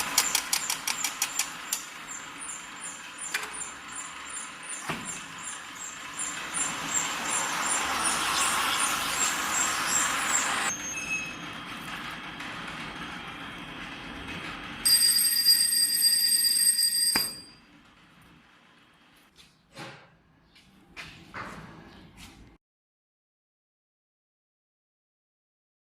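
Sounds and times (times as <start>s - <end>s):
machine hissing with high ticks: 0.0s - 10.7s
high-pitched machine tone: 0.2s - 11.9s, 14.8s - 17.8s.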